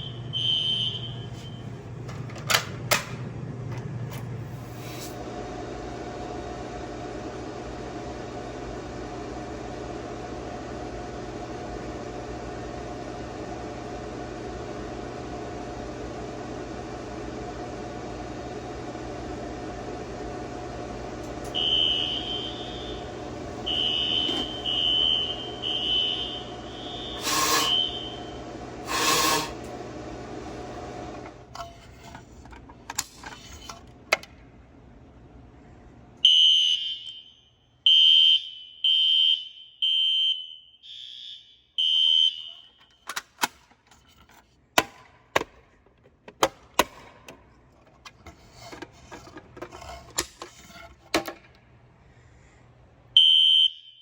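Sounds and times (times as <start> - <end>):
fire alarm high-pitched beeps: 0.0 - 1.7, 21.6 - 28.3, 36.2 - 43.0, 53.2 - 54.0.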